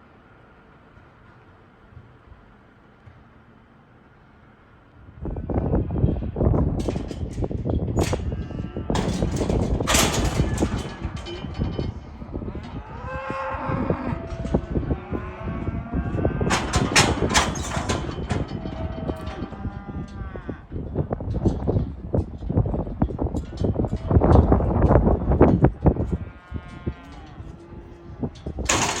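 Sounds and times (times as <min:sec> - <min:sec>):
knocking and clattering: 0:09.0 - 0:12.0, 0:16.5 - 0:19.7, 0:28.4 - 0:29.0
cattle mooing: 0:12.4 - 0:20.8, 0:25.8 - 0:29.0.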